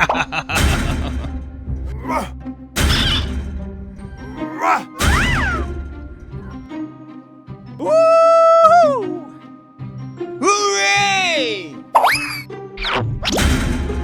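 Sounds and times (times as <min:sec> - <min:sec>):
background music: 0:00.0 - 0:14.0
door being smashed in: 0:00.6 - 0:01.3, 0:02.8 - 0:03.6, 0:04.7 - 0:05.8.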